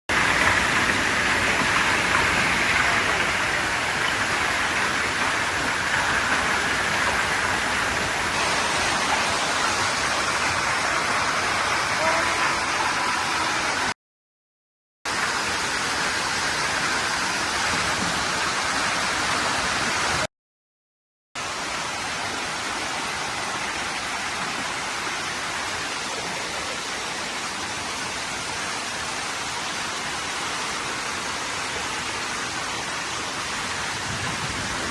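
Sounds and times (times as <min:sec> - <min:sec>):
heavy hail and rain: 0:00.1 - 0:13.9, 0:15.1 - 0:20.3, 0:21.4 - 0:34.9
strong wind: 0:33.6 - 0:34.9.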